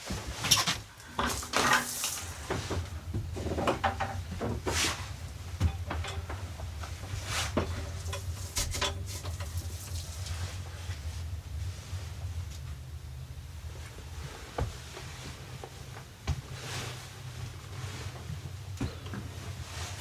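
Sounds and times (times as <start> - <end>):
objects knocking and clattering: 0.2 - 4.9, 5.5 - 10.3.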